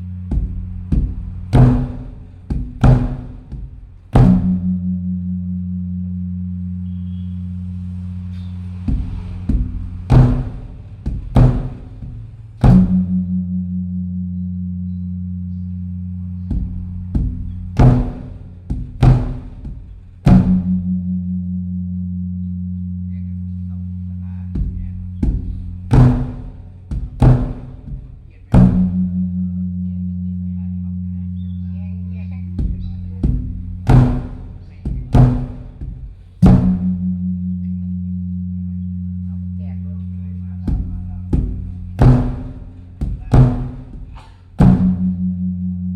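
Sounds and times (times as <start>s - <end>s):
large drum strokes: 0.0s - 5.4s, 7.6s - 14.0s, 16.4s - 21.6s, 24.5s - 29.8s, 32.5s - 37.7s, 40.6s - 45.9s
deep ringing hum: 0.0s - 45.9s.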